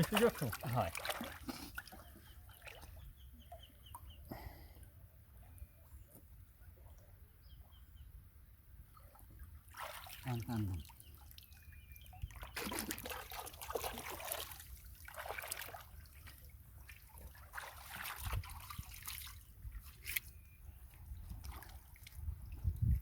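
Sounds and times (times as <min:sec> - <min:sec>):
water trickling and splashing: 0:00.0 - 0:04.2, 0:08.9 - 0:23.0.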